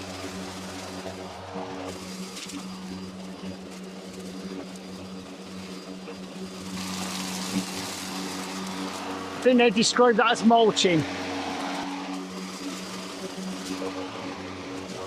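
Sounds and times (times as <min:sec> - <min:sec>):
lawnmower motor hum: 0:00.0 - 0:15.0
loud rushing noise: 0:08.1 - 0:14.0.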